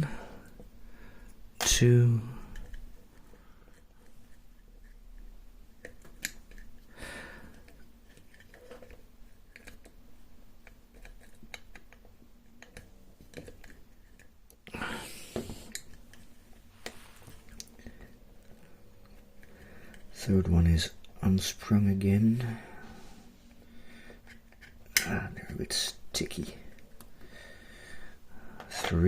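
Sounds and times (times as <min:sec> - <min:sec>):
small metal clicks and scrapes: 0:07.5 - 0:10.0, 0:10.6 - 0:14.4.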